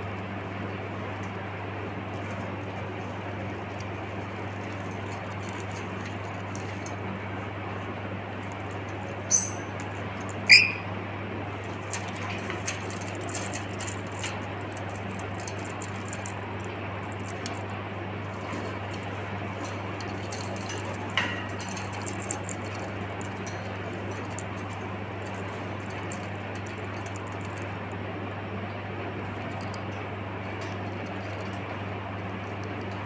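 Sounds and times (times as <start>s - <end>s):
steady low hum: 0.0s - 33.0s
parrot squeaking: 9.3s - 9.8s, 10.5s - 10.9s.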